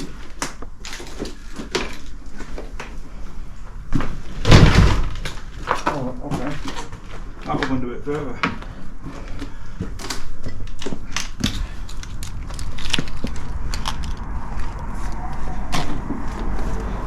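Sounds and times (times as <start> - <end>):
crunching clicks and knocks: 0.0 - 3.2, 3.8 - 16.7
steady low rumble: 7.1 - 17.0.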